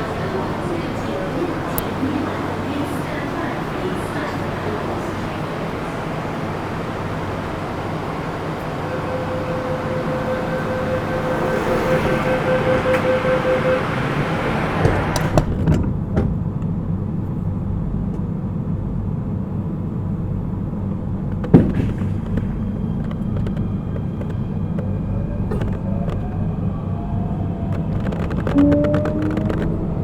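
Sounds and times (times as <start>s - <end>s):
train motor whine: 0.0s - 15.6s
train doors shutting: 0.0s - 16.6s, 21.2s - 30.0s.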